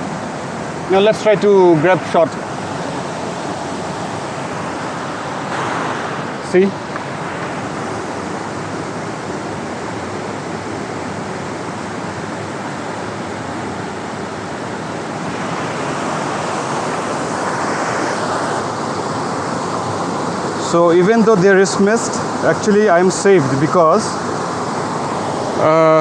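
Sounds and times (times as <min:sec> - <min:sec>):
waterfall pounding onto rock: 0:05.4 - 0:08.1.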